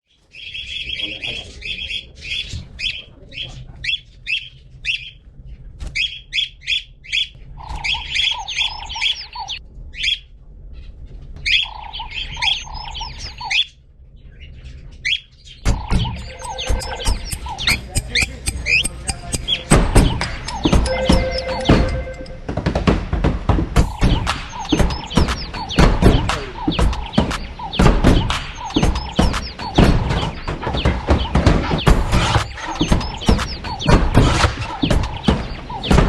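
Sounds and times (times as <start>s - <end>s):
birds chirping: 0.1s - 36.0s
lower rapid repeated bird notes: 6.0s - 10.3s, 11.4s - 36.0s
steady low hum: 15.7s - 36.0s.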